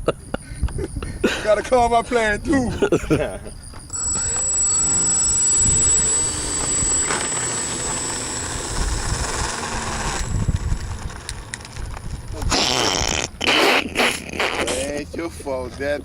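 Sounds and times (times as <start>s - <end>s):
model airplane motor whining: 3.8s - 13.5s
wind rumbling on microphone: 8.7s - 13.2s.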